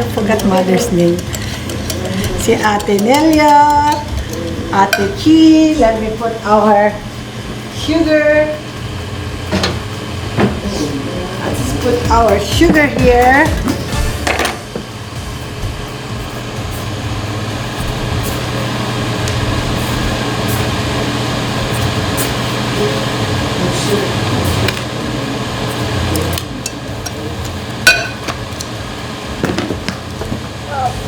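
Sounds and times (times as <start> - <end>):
batter mixed in a bowl: 0.0 - 5.2
clinks against bowl: 0.0 - 5.2, 27.8 - 28.4.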